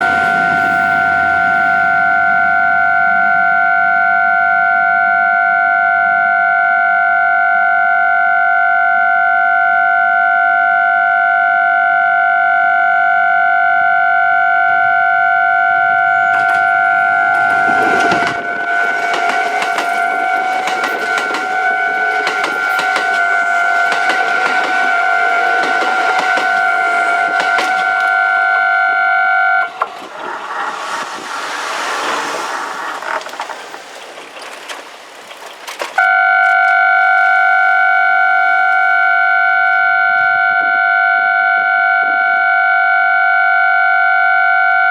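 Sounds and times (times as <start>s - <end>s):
train wheels rushing and clattering: 0.0s - 4.6s, 15.6s - 40.4s
level-crossing warning bell: 0.0s - 44.9s.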